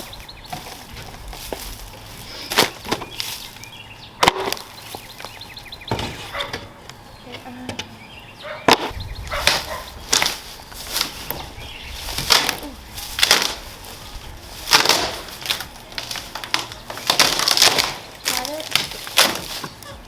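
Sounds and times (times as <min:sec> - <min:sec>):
wooden boards cracking and splintering: 0:04.2 - 0:05.3, 0:08.7 - 0:20.0.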